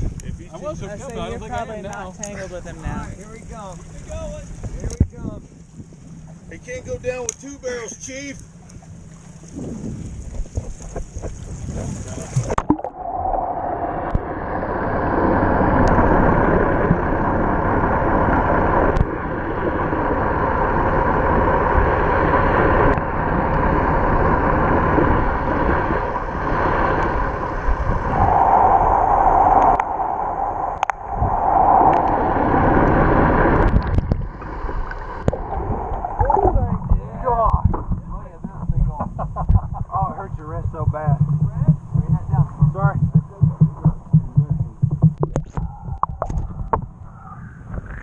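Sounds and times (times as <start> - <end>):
water noise: 0.0 - 48.0
boat engine running: 13.4 - 28.2, 31.9 - 47.1.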